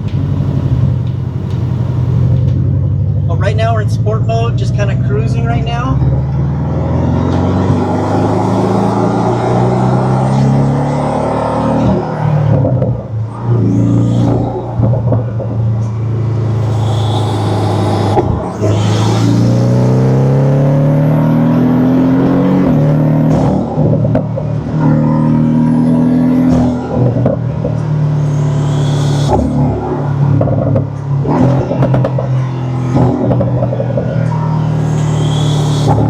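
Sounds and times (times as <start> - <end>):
car engine accelerating: 0.0 - 36.0
turbo whistle: 16.5 - 19.6, 34.1 - 36.0.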